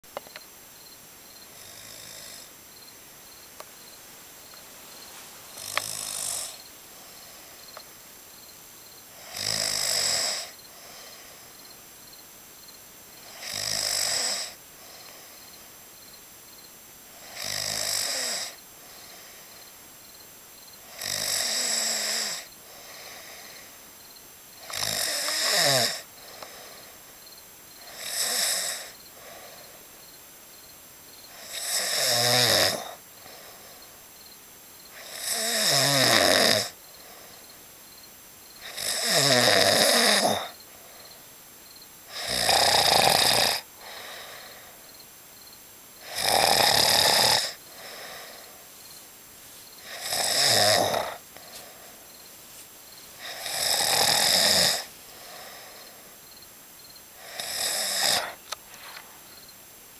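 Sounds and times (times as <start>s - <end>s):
quiet breathing: 0.8s - 31.6s, 32.8s - 35.5s, 36.7s - 39.0s, 40.3s - 42.4s, 43.6s - 46.3s, 47.2s - 59.6s
man snoring loudly: 1.5s - 2.5s, 5.5s - 6.6s, 9.1s - 11.4s, 13.2s - 15.2s, 17.2s - 19.3s, 20.8s - 23.7s, 24.6s - 26.9s, 27.8s - 29.6s, 31.3s - 33.7s, 34.9s - 37.2s, 38.6s - 40.6s, 42.1s - 44.7s, 46.0s - 48.6s, 49.8s - 51.8s, 53.2s - 56.1s, 57.2s - 58.4s.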